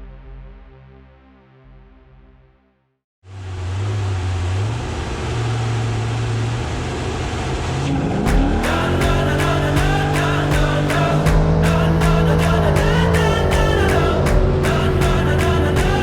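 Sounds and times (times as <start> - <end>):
race truck engine running: 3.4 - 16.0
music with steady drum beat: 8.3 - 16.0.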